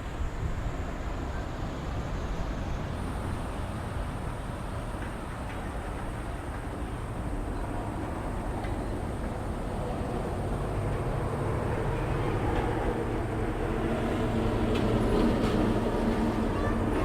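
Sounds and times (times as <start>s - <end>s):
distant jet airliner rumble: 6.3s - 17.0s.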